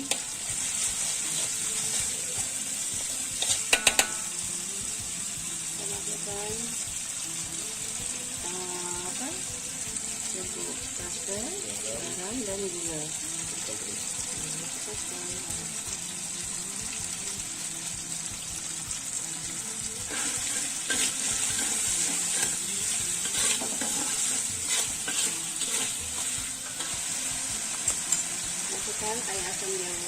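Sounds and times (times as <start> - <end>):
paste sizzling in hot oil: 0.0 - 30.0
spatula scraping a pan: 3.4 - 4.2, 20.1 - 27.2.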